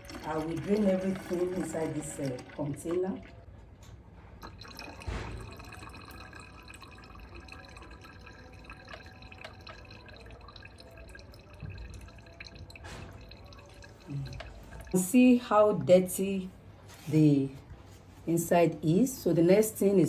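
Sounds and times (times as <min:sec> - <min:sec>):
oil trickling into a container: 0:00.0 - 0:03.5, 0:04.4 - 0:15.1.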